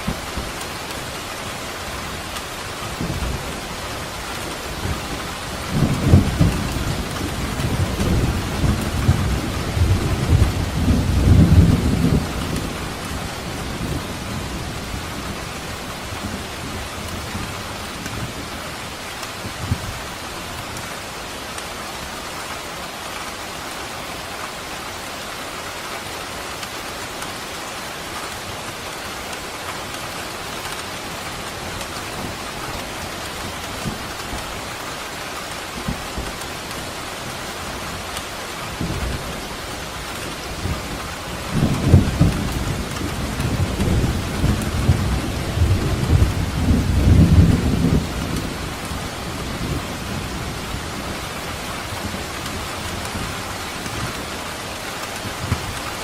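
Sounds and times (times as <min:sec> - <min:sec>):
steady rain hissing: 0:00.0 - 0:56.0
deep rumble of thunder: 0:04.8 - 0:15.6, 0:40.2 - 0:54.0.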